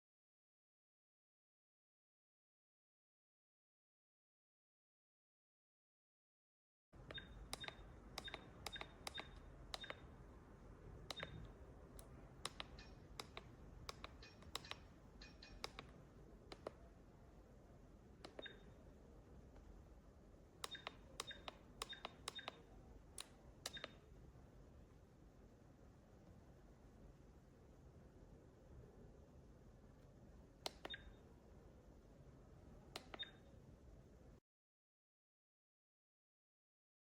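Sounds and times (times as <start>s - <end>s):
camera button clicks: 7.0s - 10.1s, 11.1s - 15.9s, 20.6s - 22.6s, 23.2s - 24.0s.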